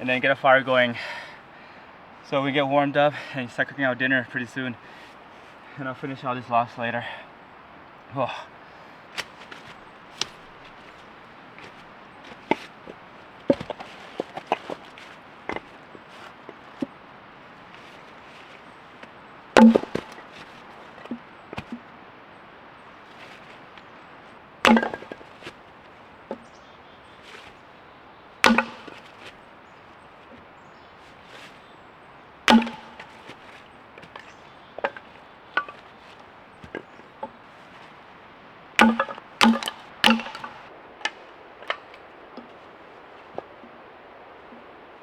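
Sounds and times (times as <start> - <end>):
axe chopping into wood: 9.2 - 17.0, 17.6 - 21.9, 24.6 - 25.6, 28.4 - 29.4, 32.5 - 37.8, 38.8 - 41.8
light wood knocks: 9.2 - 22.0, 23.0 - 26.6, 27.2 - 27.6, 28.4 - 29.4, 30.2 - 31.6, 32.5 - 38.0, 38.8 - 42.6.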